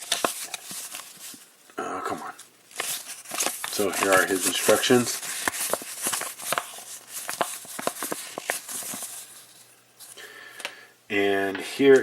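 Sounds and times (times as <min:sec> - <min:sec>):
paper rustling and crinkling: 0:00.0 - 0:01.6, 0:02.7 - 0:10.2.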